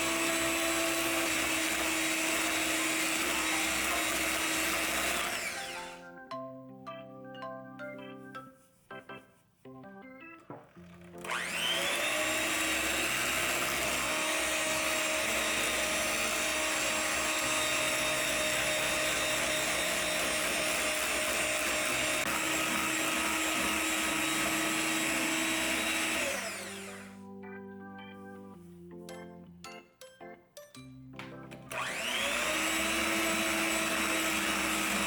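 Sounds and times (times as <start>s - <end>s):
electric hand mixer whining: 0.0s - 6.2s, 10.4s - 27.3s, 31.6s - 35.0s
soft background music: 0.0s - 21.6s, 22.3s - 35.0s.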